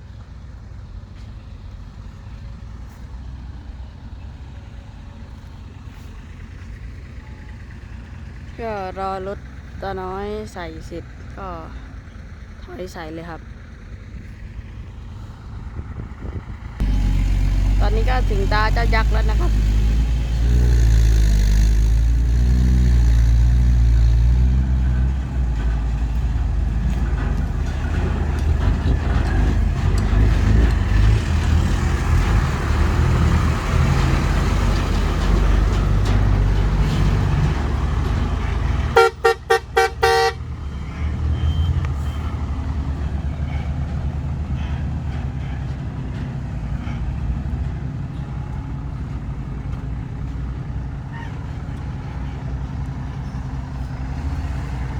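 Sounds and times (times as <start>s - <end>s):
heavy diesel engines rumbling: 0.0s - 54.9s
vehicle horn short toots: 39.0s - 40.4s.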